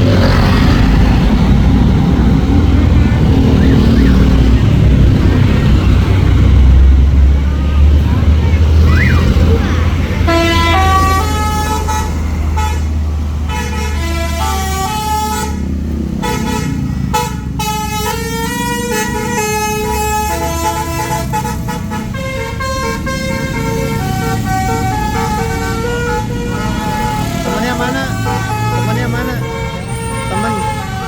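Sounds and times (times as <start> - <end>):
bus engine rumbling: 0.0 - 31.0
musical bus horn tune: 10.2 - 31.0.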